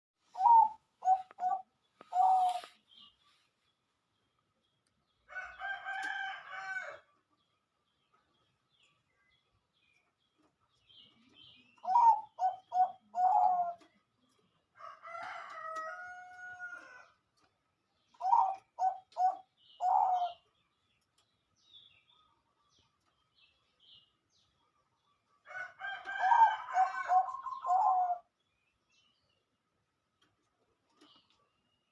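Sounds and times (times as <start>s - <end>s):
dove cooing: 0.3s - 2.8s, 11.8s - 14.0s, 18.2s - 20.4s, 26.0s - 28.3s
rooster-like calls: 14.8s - 17.1s, 25.5s - 28.2s.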